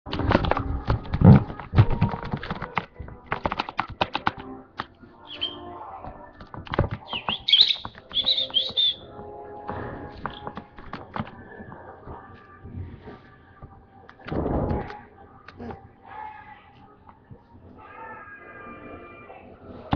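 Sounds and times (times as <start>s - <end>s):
sharp taps and clicks: 0.1s - 5.0s, 6.4s - 9.0s, 10.2s - 11.8s
lovebird chirping: 5.3s - 5.7s, 7.0s - 9.1s.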